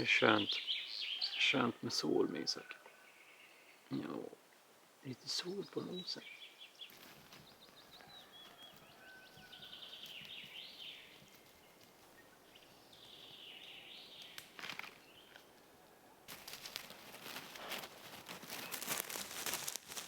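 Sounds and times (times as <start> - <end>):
songbirds chirping and trilling: 0.0 - 19.2
crackling and rustling: 6.8 - 12.7, 14.2 - 20.0.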